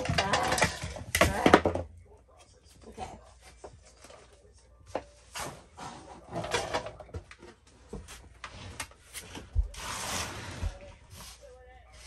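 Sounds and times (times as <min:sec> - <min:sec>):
rustling and scraping: 0:03.4 - 0:12.0.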